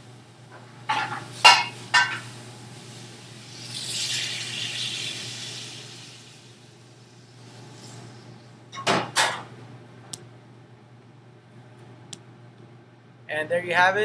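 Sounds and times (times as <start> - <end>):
food sizzling in hot pan: 0.9 - 8.5.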